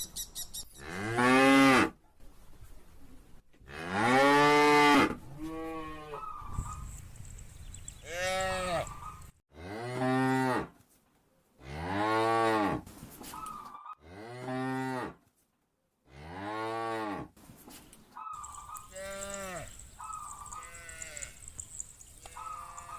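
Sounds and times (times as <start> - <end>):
cows mooing: 8.0 - 10.5, 18.4 - 22.9.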